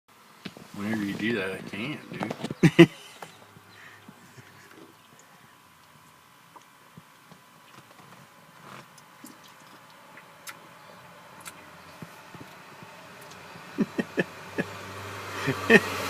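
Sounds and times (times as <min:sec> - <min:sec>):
soft rustle: 0:00.4 - 0:13.0.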